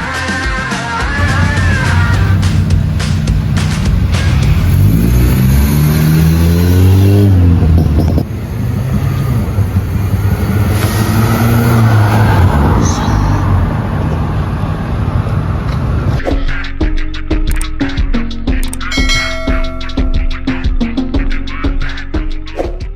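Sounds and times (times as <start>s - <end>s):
car engine revving: 1.2s - 16.2s.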